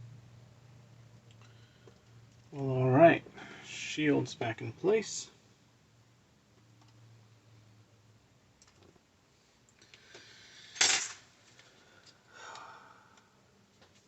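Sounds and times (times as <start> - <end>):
soft rush of noise: 0.0 - 8.4.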